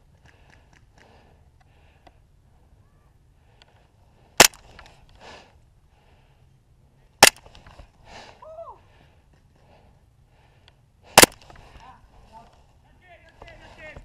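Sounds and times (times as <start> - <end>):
airsoft pistol shots: 4.4 - 4.8, 7.2 - 7.5, 11.2 - 11.5.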